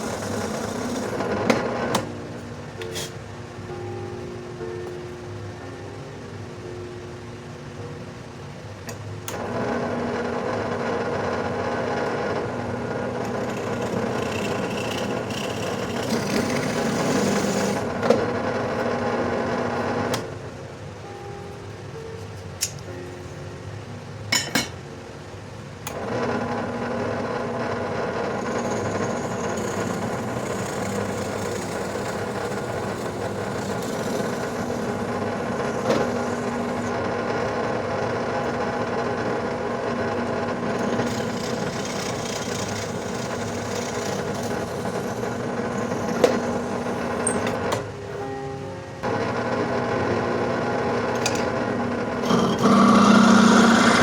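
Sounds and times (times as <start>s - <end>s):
electric drill boring: 0.0s - 2.0s, 11.8s - 18.0s, 25.9s - 47.8s, 52.1s - 54.0s.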